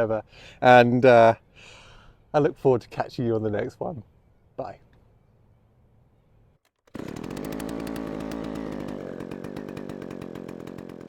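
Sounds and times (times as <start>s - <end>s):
chainsaw engine running: 6.9s - 11.0s.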